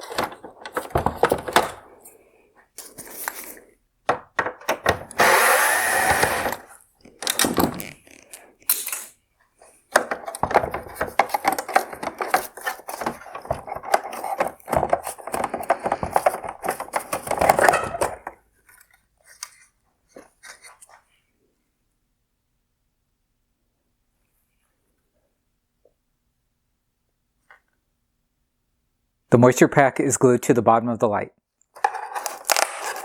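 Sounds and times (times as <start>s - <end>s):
plastic parts scraping: 0.0s - 2.2s, 4.4s - 21.0s, 31.8s - 33.0s.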